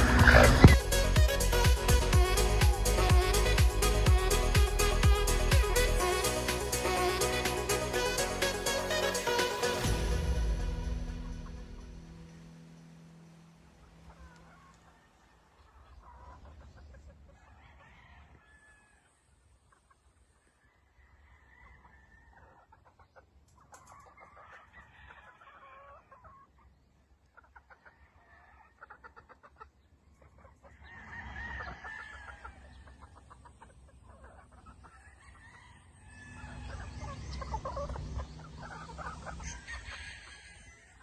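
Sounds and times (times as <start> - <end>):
chickens clucking: 0.0 - 9.9, 13.9 - 18.4, 19.5 - 41.0
rooster crowing: 17.4 - 19.2, 20.8 - 22.6, 30.7 - 32.8, 34.9 - 37.8, 38.6 - 41.0.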